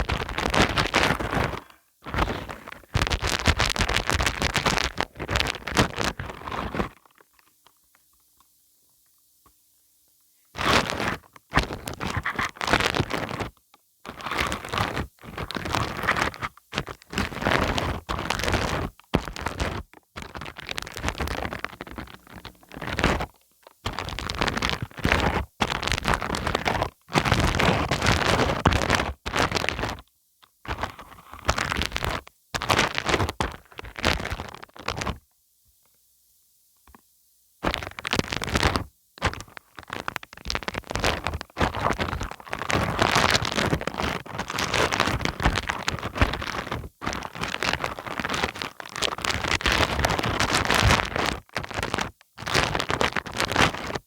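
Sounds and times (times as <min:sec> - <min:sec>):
sticky glue crackling and scraping: 0:16.9 - 0:25.8.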